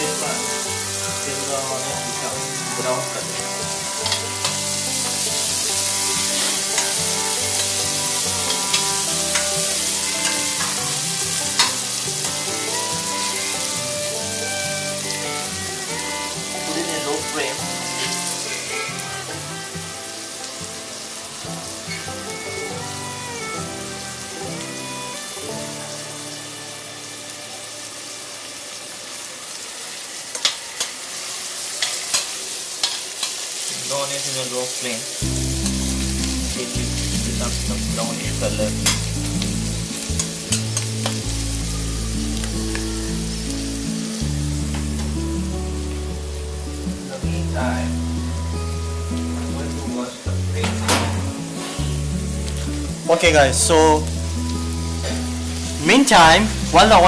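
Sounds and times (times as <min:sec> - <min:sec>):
onions sizzling in a pan: 0:00.0 - 0:57.0
utensil clicking against pan: 0:04.0 - 0:04.6, 0:08.5 - 0:10.8, 0:31.8 - 0:33.4.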